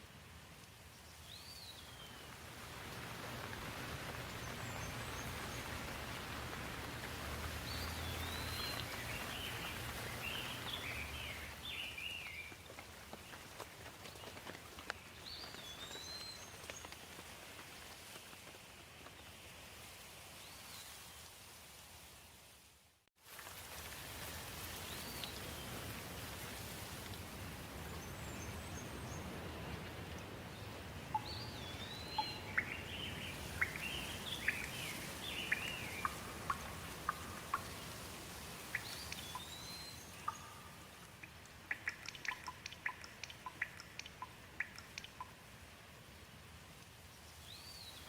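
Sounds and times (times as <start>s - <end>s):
steady rain falling: 0.0s - 48.0s
water drops dripping: 33.6s - 45.4s.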